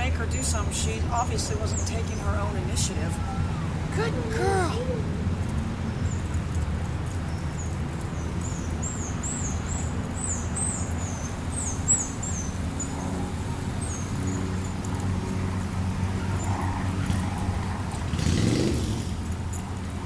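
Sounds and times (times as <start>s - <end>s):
bird chirping: 5.4s - 15.7s.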